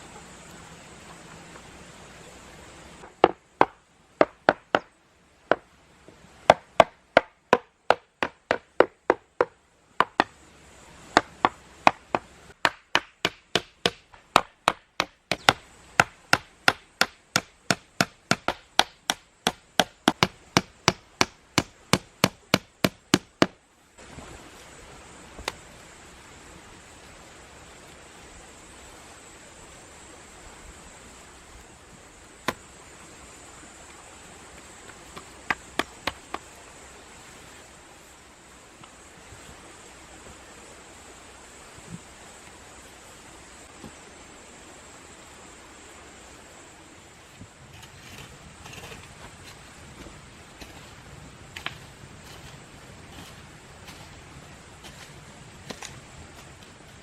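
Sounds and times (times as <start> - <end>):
sharp strikes on wood: 3.0 - 4.9, 6.5 - 10.4, 11.2 - 23.6.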